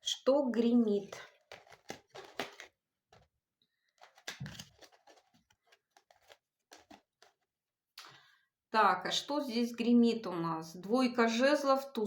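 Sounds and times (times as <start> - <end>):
cards clicking and rustling: 1.3 - 3.3, 3.9 - 7.5.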